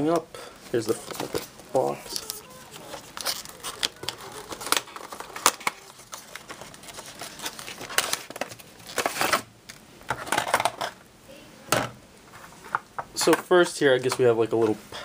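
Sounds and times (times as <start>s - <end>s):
packaging crinkling: 0.9s - 10.8s.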